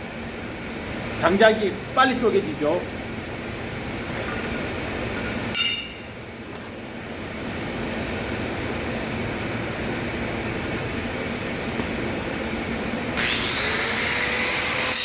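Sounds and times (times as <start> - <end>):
steady mechanical hum: 0.0 - 15.0
ringing clink of steel: 5.6 - 6.1.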